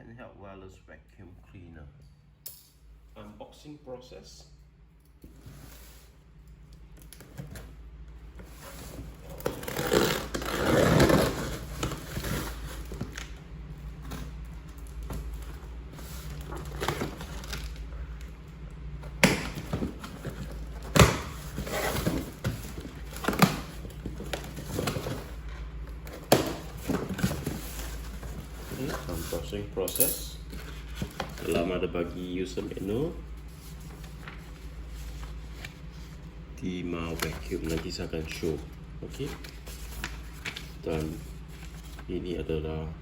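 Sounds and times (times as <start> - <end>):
cardboard packaging rustling: 7.0 - 29.8, 30.4 - 36.3, 37.0 - 42.2.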